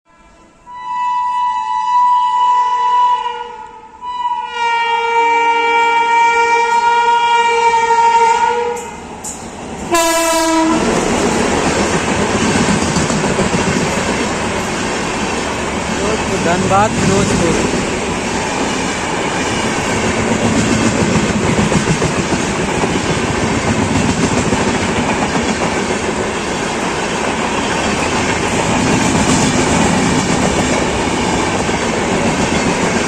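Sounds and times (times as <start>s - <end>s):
locomotive air horn blasts: 0.1s - 9.0s, 9.9s - 11.0s
train wheels rumbling on rails: 5.7s - 33.0s.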